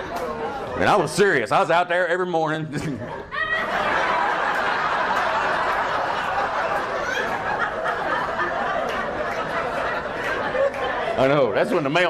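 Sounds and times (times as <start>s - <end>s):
audience laughing: 2.8s - 12.0s.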